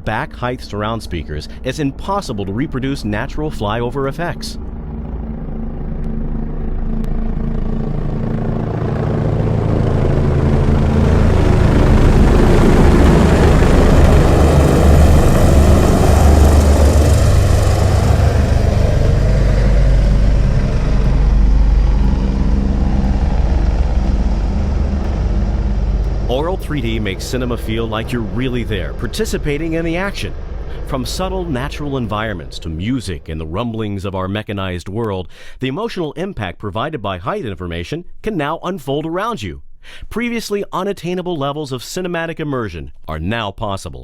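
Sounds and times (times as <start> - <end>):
helicopter rotors chopping: 0.0 - 34.5.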